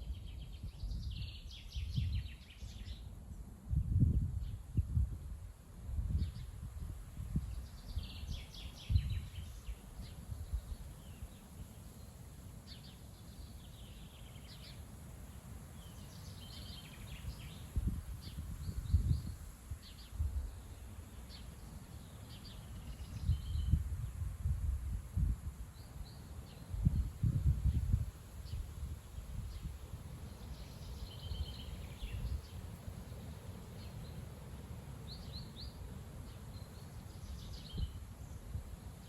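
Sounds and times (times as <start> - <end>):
gusty wind buffeting microphone: 0.0 - 3.0, 3.6 - 11.2, 17.0 - 20.8, 22.4 - 25.8, 26.5 - 34.2, 37.1 - 38.9.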